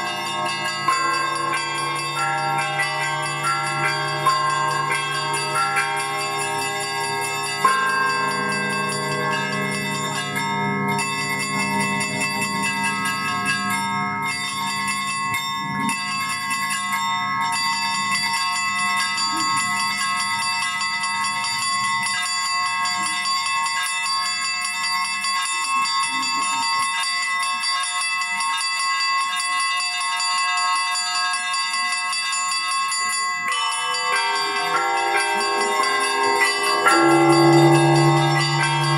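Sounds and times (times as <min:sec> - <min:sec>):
large bell struck: 0:00.0 - 0:20.5, 0:33.9 - 0:38.9
small church bells ringing: 0:00.0 - 0:38.9.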